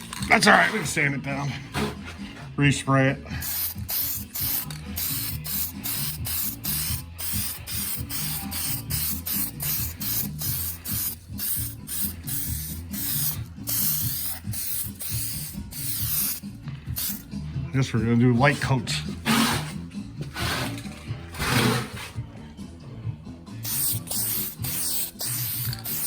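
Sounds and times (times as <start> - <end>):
spray gun hissing bursts: 23.7 - 26.0.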